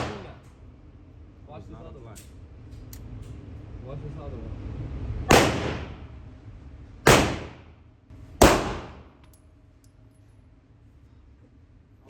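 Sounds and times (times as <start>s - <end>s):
gunshots with echo: 0.0s - 0.4s, 5.3s - 6.0s, 7.1s - 7.7s, 8.4s - 9.1s.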